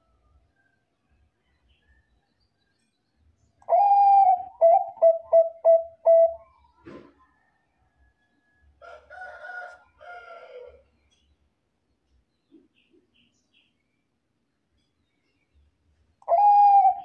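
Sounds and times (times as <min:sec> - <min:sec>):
dove cooing: 0:03.7 - 0:06.5, 0:16.2 - 0:17.0.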